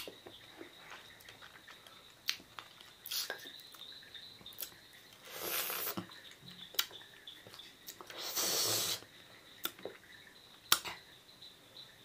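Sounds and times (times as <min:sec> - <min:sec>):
mouth clicks eating fruit: 0:05.4 - 0:09.0, 0:09.6 - 0:10.0, 0:10.7 - 0:11.1
hissing intake of breath: 0:08.2 - 0:09.0.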